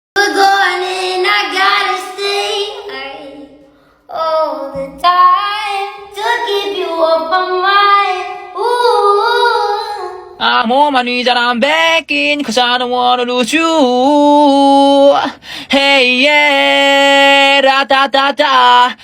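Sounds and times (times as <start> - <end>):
girl singing unaccompanied: 0.2 - 10.4.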